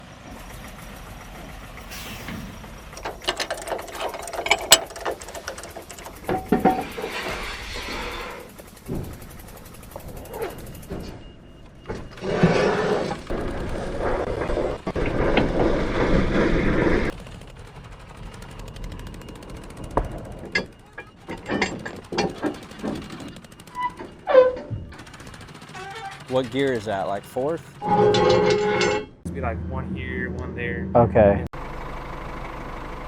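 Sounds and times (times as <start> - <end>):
metal clanks and knocks: 2.9 - 12.5, 19.8 - 25.0, 27.8 - 29.3.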